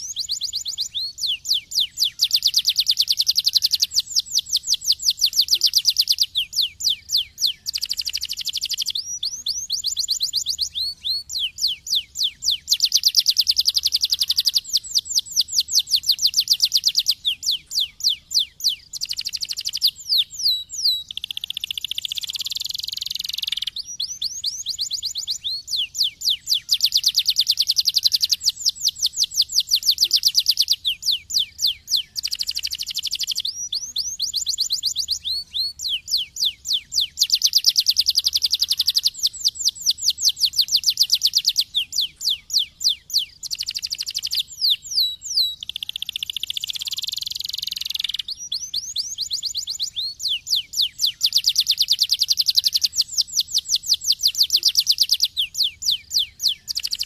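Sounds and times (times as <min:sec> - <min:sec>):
canary singing trills: 0:00.0 - 0:57.0.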